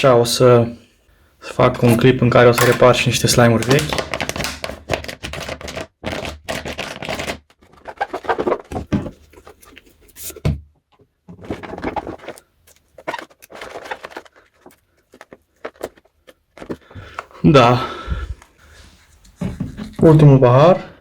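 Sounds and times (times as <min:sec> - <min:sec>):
plastic cups and bottle handled: 0:01.4 - 0:21.0.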